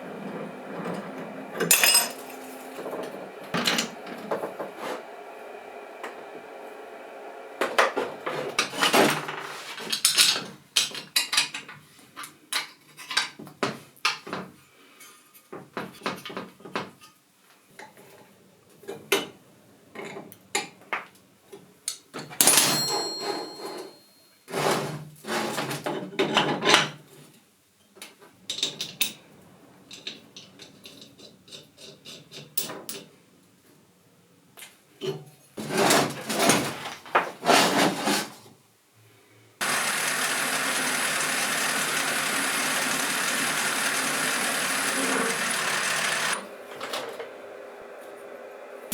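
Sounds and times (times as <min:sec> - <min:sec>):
hard objects clinking and knocking: 0:01.6 - 0:02.4.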